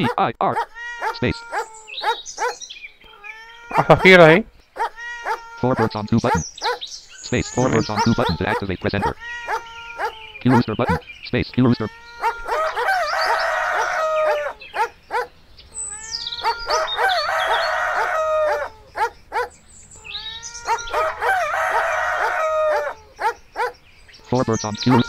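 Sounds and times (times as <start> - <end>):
birds chirping: 0.0 - 25.0
rooster crowing: 12.1 - 14.6, 16.4 - 18.9, 20.6 - 23.1.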